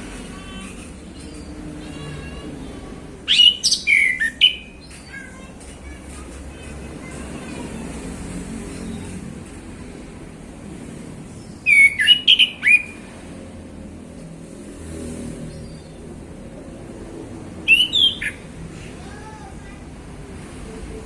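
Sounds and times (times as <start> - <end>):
thrush singing whistled notes: 3.3 - 4.8, 11.6 - 13.0, 17.7 - 18.4.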